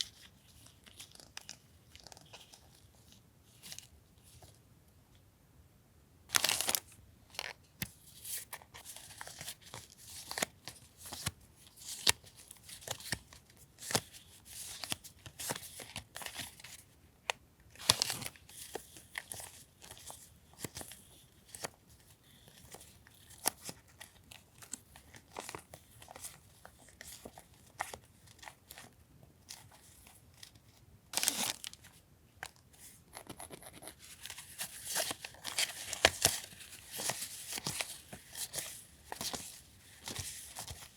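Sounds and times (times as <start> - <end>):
packaging crinkling and tearing: 6.3 - 7.6, 31.2 - 32.0, 34.0 - 40.9.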